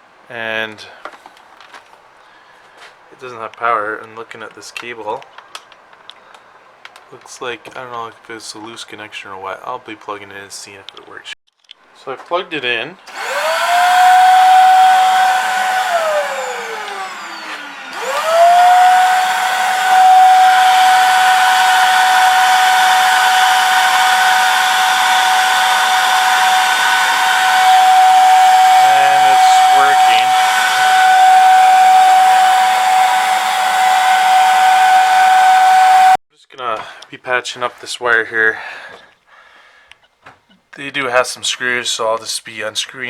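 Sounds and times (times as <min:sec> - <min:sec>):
vacuum cleaner motor whining: 0:13.1 - 0:36.2.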